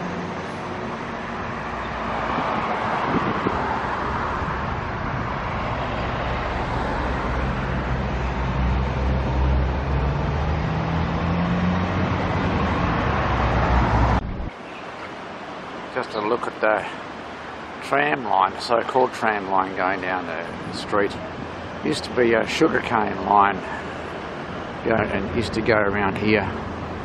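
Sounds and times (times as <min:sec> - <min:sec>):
road traffic noise: 0:00.0 - 0:27.0
diesel bus engine running: 0:02.8 - 0:14.5.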